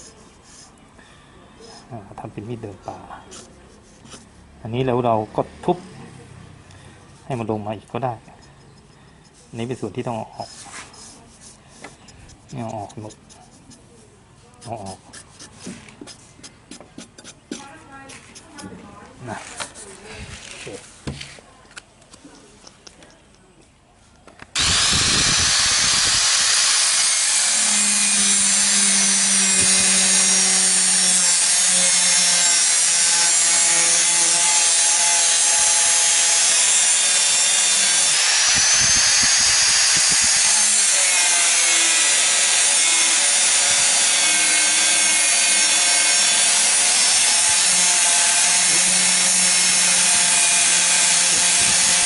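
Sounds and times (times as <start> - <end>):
angle grinder grinding steel: 24.6 - 52.0.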